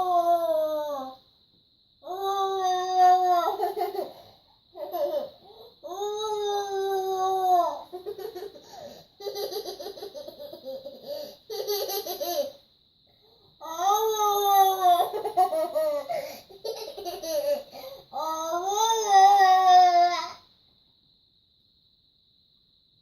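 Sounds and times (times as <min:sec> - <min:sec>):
child laughing: 0:03.4 - 0:04.2, 0:07.7 - 0:12.6, 0:14.8 - 0:17.7.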